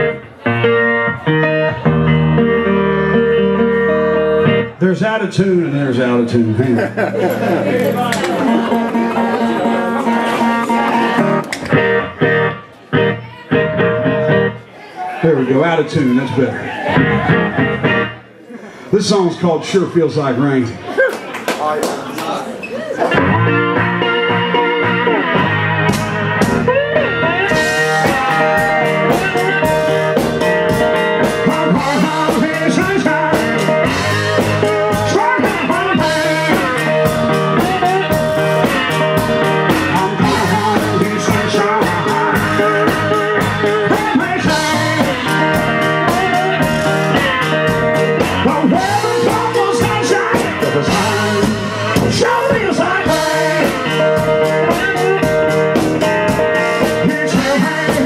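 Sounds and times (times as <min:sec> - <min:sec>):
slide guitar: 0:00.0 - 0:18.2, 0:23.1 - 0:58.0
person singing: 0:26.7 - 0:58.0.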